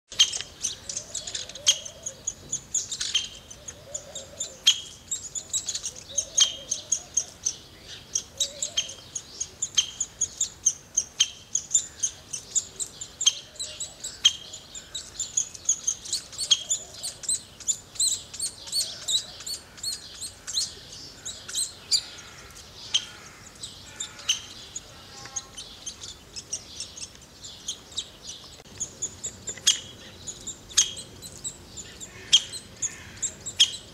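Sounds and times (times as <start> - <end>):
sharp loud bird calls: 0.1 - 33.9
small birds chirping: 0.1 - 33.9.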